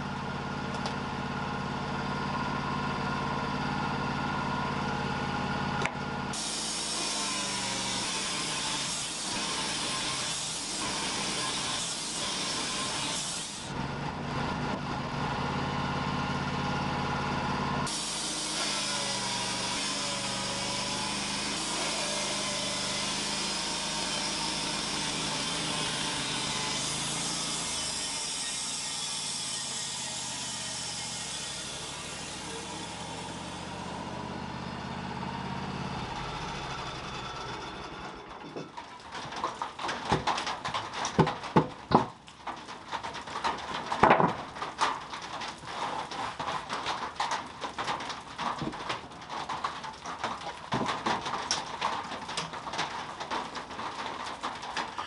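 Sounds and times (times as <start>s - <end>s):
sawmill engine running: 0.0s - 55.0s
band blade sawing log: 6.3s - 13.8s, 17.8s - 34.0s.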